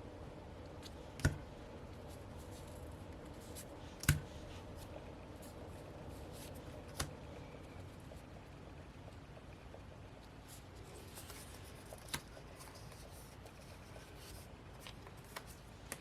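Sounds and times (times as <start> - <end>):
faint paper rustling: 1.9 - 8.0, 10.2 - 16.0.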